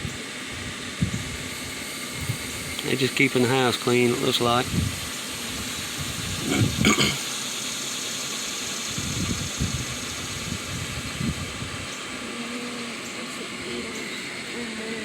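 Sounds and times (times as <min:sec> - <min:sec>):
steady hiss: 0:00.0 - 0:15.0
bee buzzing: 0:12.1 - 0:15.0.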